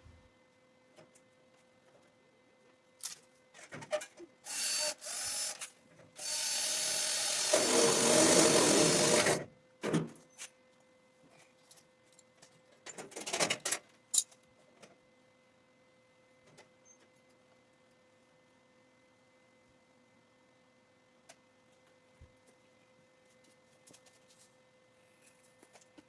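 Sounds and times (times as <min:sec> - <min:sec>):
metalworking tool running: 0:06.2 - 0:09.4.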